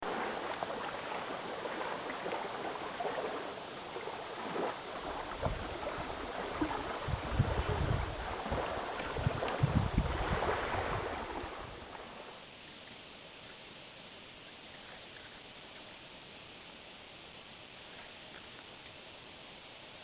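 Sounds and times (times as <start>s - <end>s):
water lapping and flowing: 0.0s - 20.0s
wind buffeting microphone: 4.5s - 11.9s.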